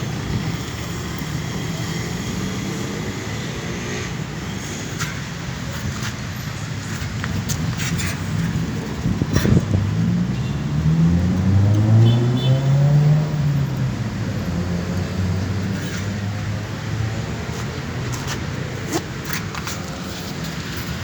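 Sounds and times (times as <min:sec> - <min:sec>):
engine revving up: 0:10.0 - 0:13.7.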